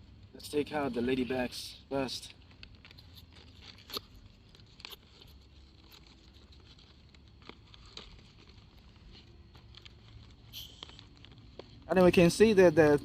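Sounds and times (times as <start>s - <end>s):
packaging rustling: 0.0s - 13.0s.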